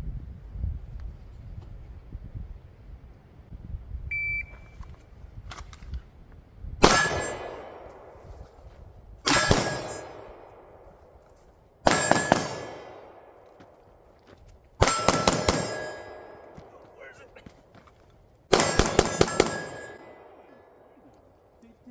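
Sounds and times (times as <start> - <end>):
steel targets clanging: 6.8 - 8.0, 9.3 - 10.6, 11.9 - 13.2, 14.8 - 17.0, 18.5 - 20.8
handgun shots: 6.8 - 8.2, 9.3 - 10.7, 11.9 - 13.7, 14.8 - 17.0, 18.5 - 20.4.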